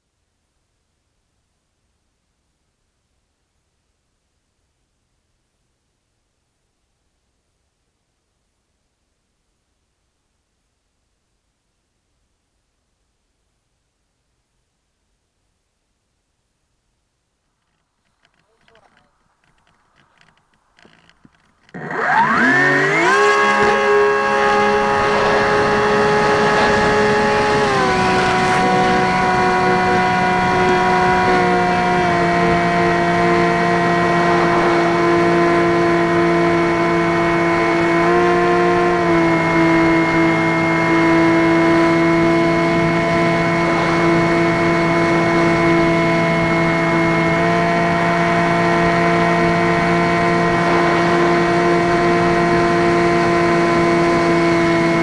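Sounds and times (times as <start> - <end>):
electric motor and propeller whine: 18.3 - 55.0.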